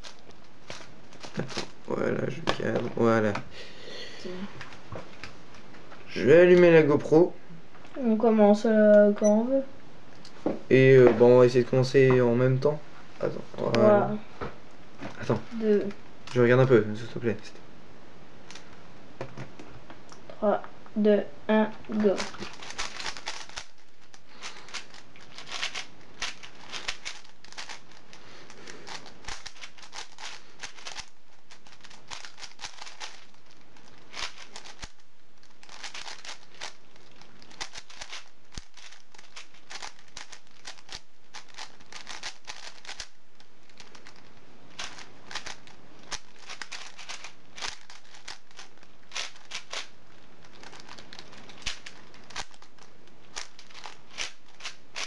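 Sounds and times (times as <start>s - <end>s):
speedcube turning clatter: 22.0s - 55.0s.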